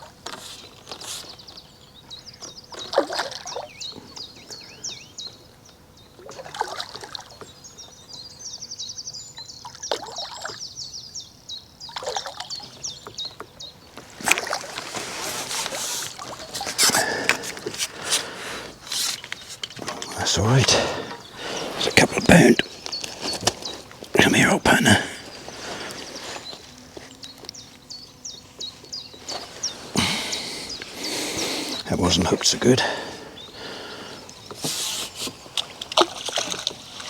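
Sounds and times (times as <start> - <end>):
water splashing and trickling: 2.7 - 3.7, 6.2 - 7.5, 9.6 - 10.6, 11.9 - 12.8, 14.2 - 16.9, 35.4 - 37.0.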